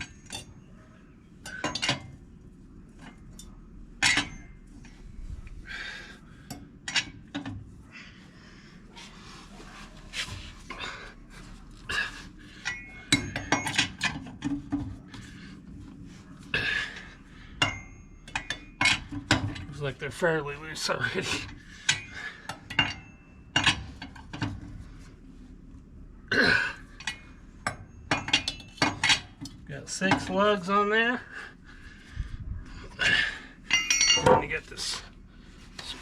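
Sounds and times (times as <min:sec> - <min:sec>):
metal hand tools clinking: 0:33.7 - 0:34.6.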